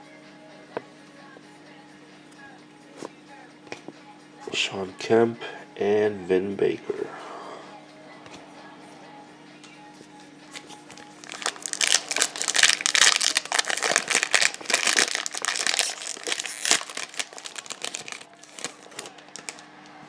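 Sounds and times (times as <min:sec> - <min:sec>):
wrapper tearing and crinkling: 0:10.6 - 0:19.7.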